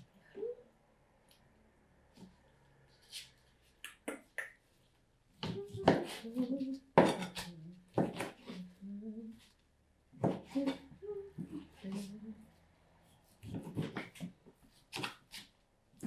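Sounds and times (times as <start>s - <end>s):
woman humming: 0.2s - 0.7s, 5.4s - 9.5s, 10.5s - 12.5s.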